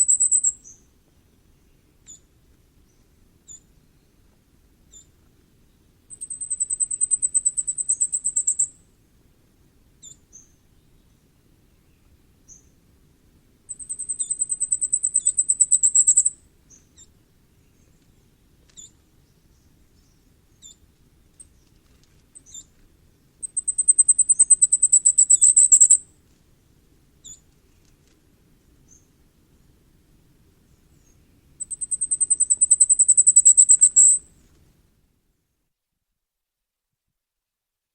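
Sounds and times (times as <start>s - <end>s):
bird singing high thin notes: 31.6s - 34.2s.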